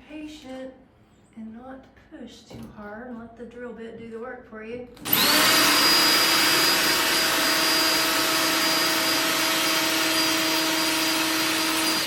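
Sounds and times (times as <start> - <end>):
power drill grinding into tile: 5.0 - 12.0.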